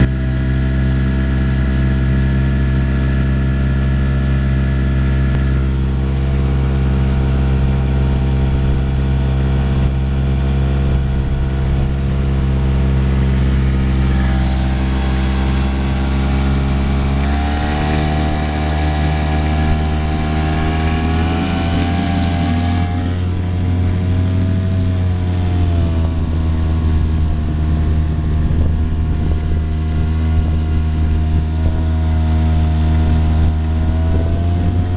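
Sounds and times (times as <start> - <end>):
boat engine running: 0.0 - 34.9.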